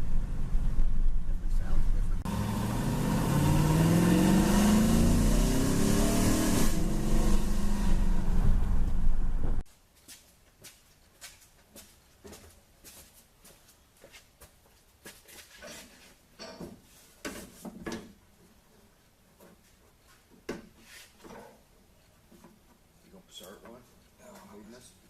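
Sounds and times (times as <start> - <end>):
car engine revving: 0.0 - 9.6.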